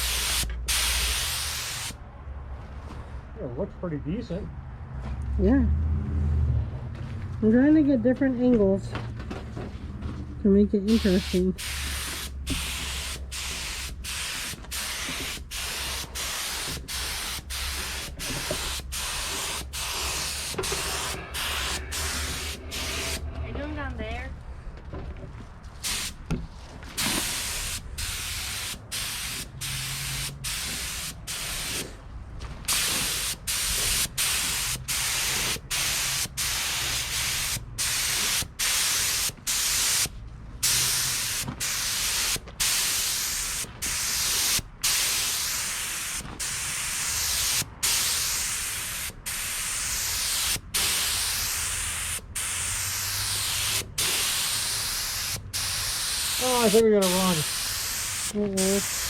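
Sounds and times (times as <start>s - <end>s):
paint spray gun hissing: 0.0s - 2.0s, 10.9s - 23.2s, 25.8s - 26.2s, 27.0s - 31.9s, 32.7s - 59.0s.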